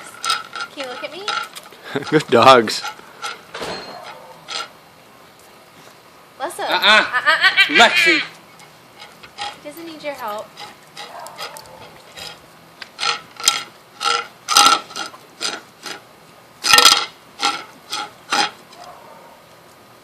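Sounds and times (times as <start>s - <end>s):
dog eating: 10.2s - 14.3s.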